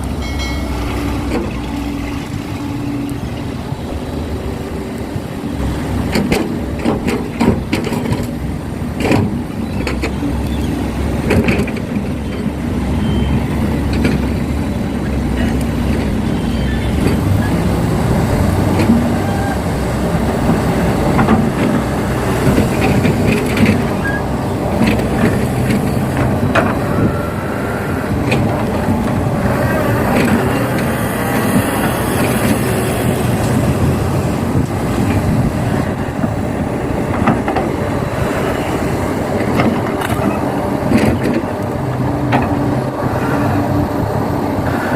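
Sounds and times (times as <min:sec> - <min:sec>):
heavy diesel engines running: 0:00.0 - 0:44.9
clanks and knocks: 0:20.4 - 0:26.8.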